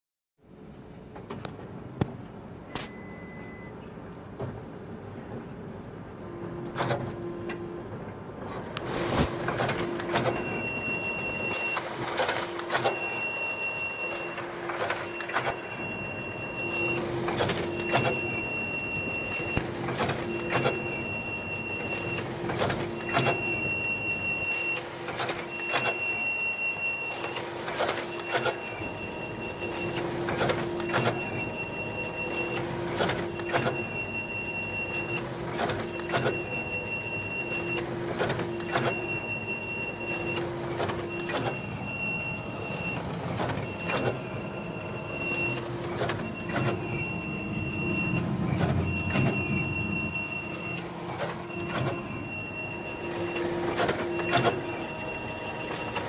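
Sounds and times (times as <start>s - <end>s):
high-pitched machine squeal: 9.0s - 56.0s.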